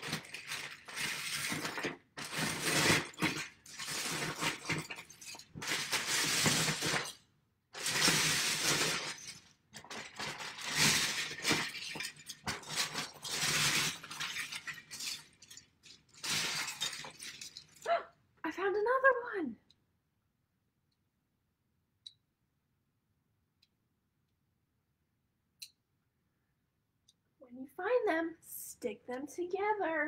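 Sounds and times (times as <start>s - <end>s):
plastic bricks clattering: 0.0s - 7.2s, 7.8s - 17.9s.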